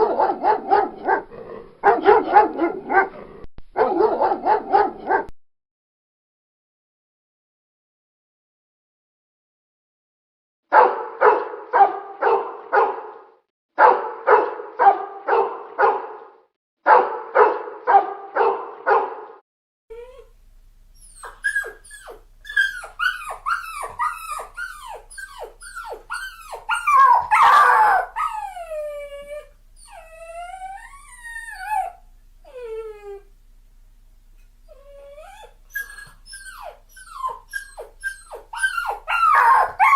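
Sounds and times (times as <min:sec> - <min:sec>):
dog barking: 0:00.0 - 0:03.2, 0:03.8 - 0:05.3, 0:10.7 - 0:19.4, 0:21.6 - 0:28.4, 0:38.6 - 0:39.9
dog whimpering and yelping: 0:19.9 - 0:20.4, 0:21.0 - 0:33.3, 0:34.6 - 0:39.9.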